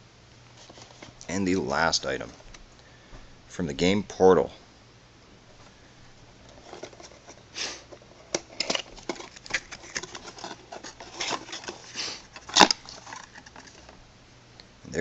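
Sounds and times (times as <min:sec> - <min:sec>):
packaging crinkling and tearing: 0:08.3 - 0:14.0
packaging clicks: 0:08.4 - 0:13.9.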